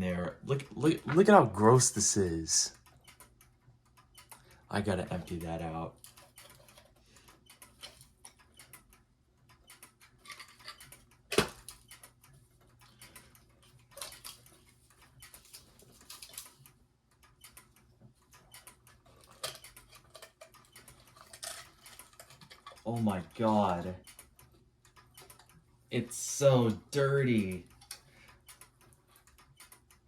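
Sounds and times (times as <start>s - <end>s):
small clicks: 5.2s - 23.1s, 24.0s - 25.6s, 27.4s - 30.0s.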